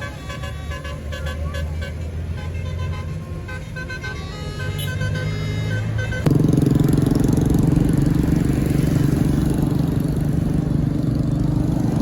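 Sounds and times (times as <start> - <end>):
bus horn playing a tune: 0.0 - 6.3
heavy vehicle engine drone: 0.0 - 12.0.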